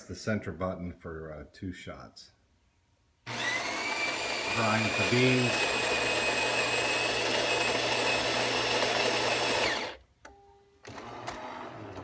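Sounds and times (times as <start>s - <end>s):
coffee grinder whirring: 3.3s - 10.0s, 10.9s - 12.0s.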